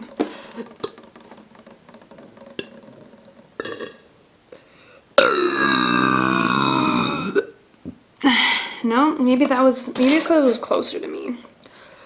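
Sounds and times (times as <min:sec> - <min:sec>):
woman burping loudly: 0:03.6 - 0:04.1, 0:05.2 - 0:07.6.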